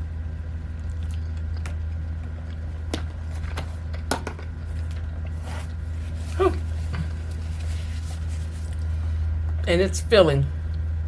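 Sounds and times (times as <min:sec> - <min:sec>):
steady low hum: 0:00.0 - 0:11.0
person chewing: 0:00.7 - 0:08.9.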